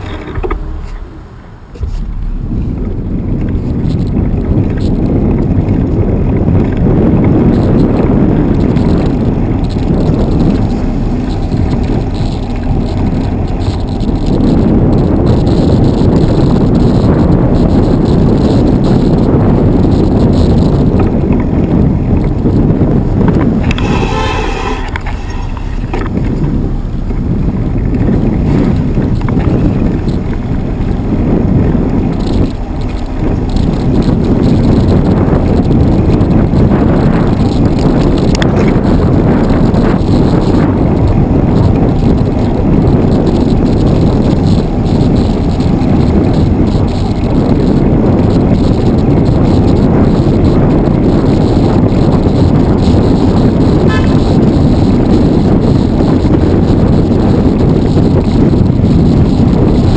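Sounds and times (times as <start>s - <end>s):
wind buffeting microphone: 0.0s - 59.9s
car horn: 23.6s - 26.3s, 53.7s - 54.9s.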